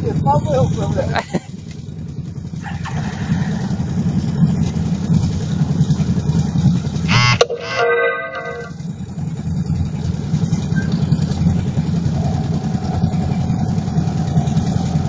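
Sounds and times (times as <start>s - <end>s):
atv engine running at low revs: 0.0s - 15.0s
faint steady whine: 7.1s - 15.0s.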